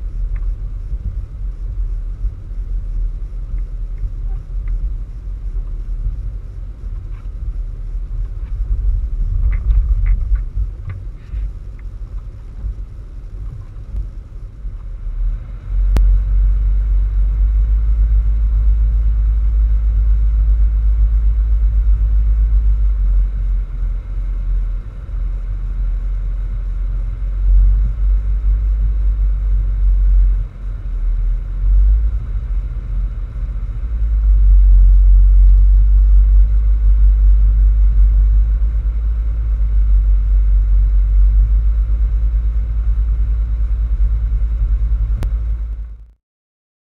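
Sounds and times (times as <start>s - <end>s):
wind buffeting microphone: 0.0s - 14.1s
faint ticks: 0.2s - 12.8s.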